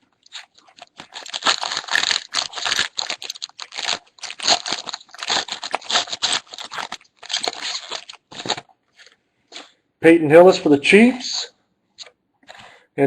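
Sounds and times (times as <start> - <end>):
foil wrapper tearing and crinkling: 0.2 - 8.7.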